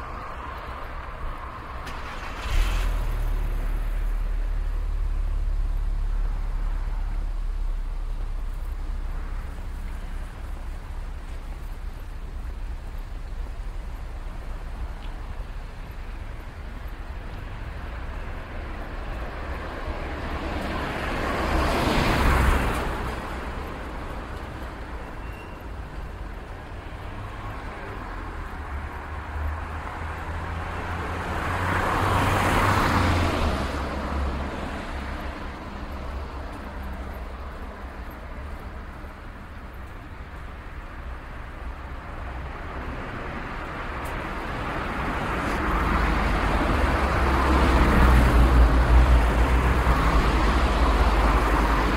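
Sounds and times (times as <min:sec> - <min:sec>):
traffic engine rumble: 0:00.0 - 0:51.9
vehicle passing close: 0:01.6 - 0:10.8.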